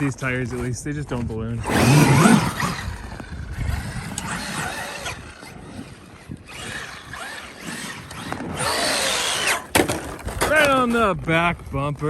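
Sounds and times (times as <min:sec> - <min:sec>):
electric motor whining: 0:01.6 - 0:10.3.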